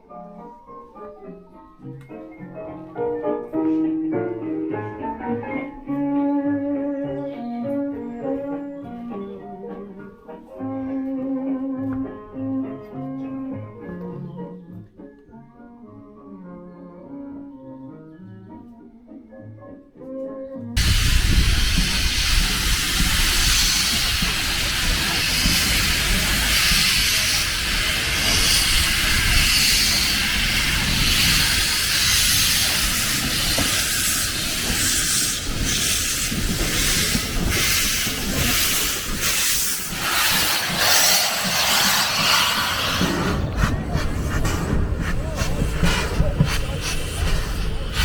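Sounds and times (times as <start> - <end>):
low rumble: 20.8 - 26.4, 39.9 - 48.0
steam locomotive hissing: 20.8 - 48.0.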